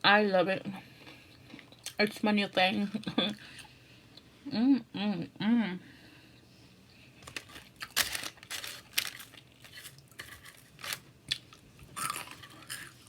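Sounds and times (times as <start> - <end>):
crunchy food chewing: 7.4 - 13.0.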